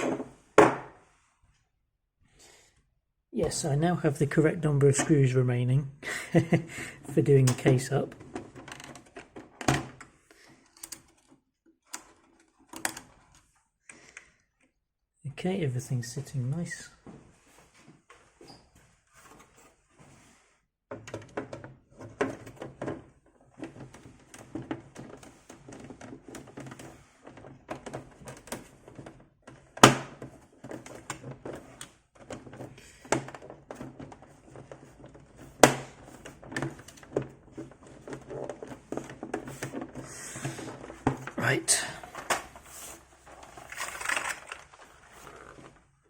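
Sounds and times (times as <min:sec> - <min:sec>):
plastic parts knocking and clicking: 0:00.0 - 0:01.0, 0:06.3 - 0:14.7, 0:20.9 - 0:45.9.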